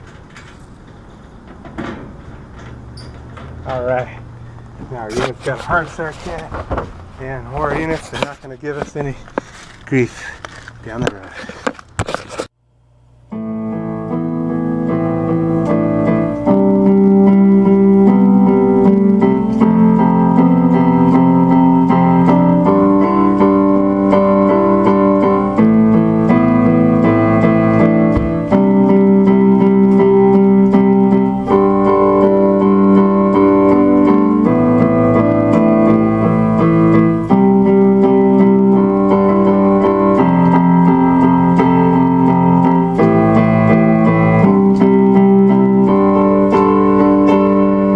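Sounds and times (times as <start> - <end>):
slow keyboard chords: 12.6 - 47.9.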